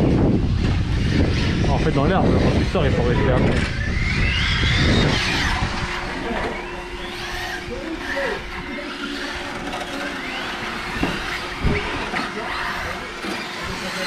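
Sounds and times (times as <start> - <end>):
rc car motors whining: 0.0 - 14.0.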